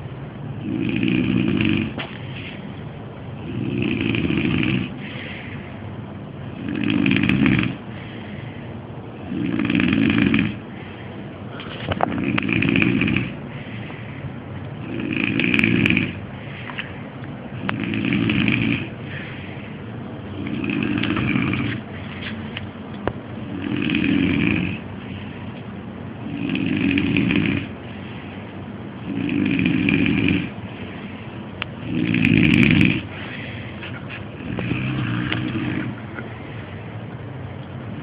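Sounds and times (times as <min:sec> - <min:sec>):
quiet breathing: 0:00.0 - 0:38.0
man snoring loudly: 0:00.6 - 0:02.0, 0:03.4 - 0:05.0, 0:06.5 - 0:07.8, 0:09.2 - 0:10.6, 0:12.1 - 0:13.4, 0:14.8 - 0:16.2, 0:17.6 - 0:19.2, 0:20.3 - 0:21.8, 0:23.4 - 0:24.9, 0:26.2 - 0:27.8, 0:29.0 - 0:30.6, 0:31.8 - 0:33.2, 0:34.4 - 0:36.0.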